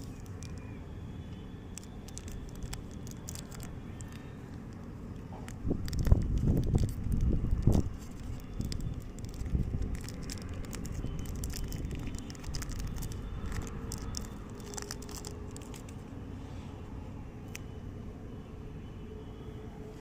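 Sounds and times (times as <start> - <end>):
wrapper crinkling and tearing: 0.0 - 0.6, 1.7 - 16.0.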